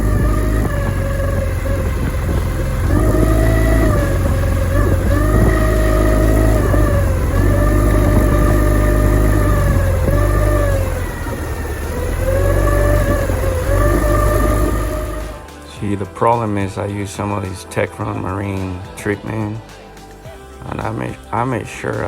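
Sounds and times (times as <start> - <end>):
outboard motor running unevenly: 0.0 - 15.6.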